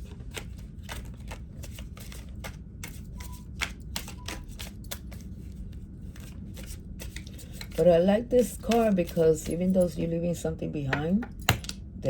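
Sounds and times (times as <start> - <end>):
cards shuffling: 0.0 - 9.6.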